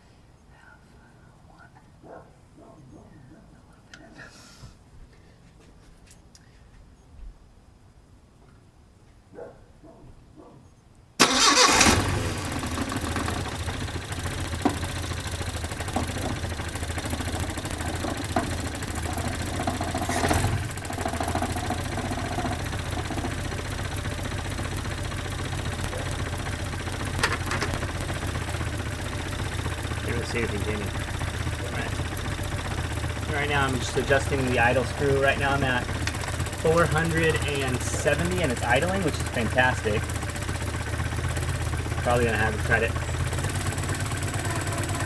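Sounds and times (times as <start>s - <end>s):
car engine starting and idling: 11.2s - 45.0s.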